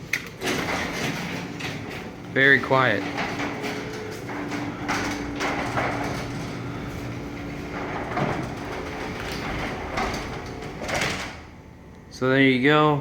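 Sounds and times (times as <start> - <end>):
garage door rolling: 0.0 - 12.2
garage door opener humming: 0.0 - 12.9
garage door thump: 0.3 - 12.0.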